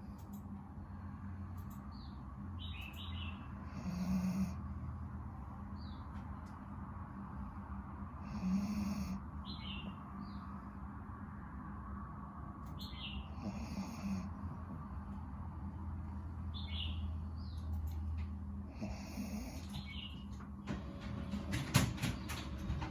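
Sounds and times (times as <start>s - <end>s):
dog snoring: 3.7s - 4.6s, 8.2s - 9.2s, 13.4s - 14.4s, 18.7s - 19.8s.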